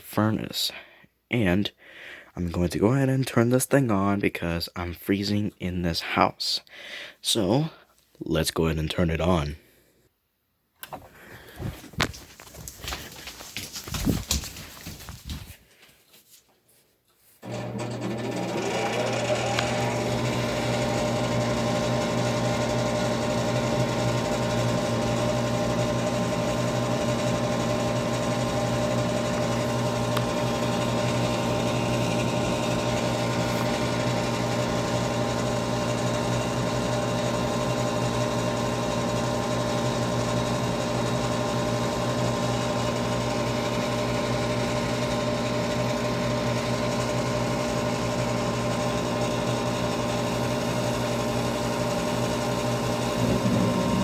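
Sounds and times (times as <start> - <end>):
furnace fan humming and whining: 17.4 - 54.0.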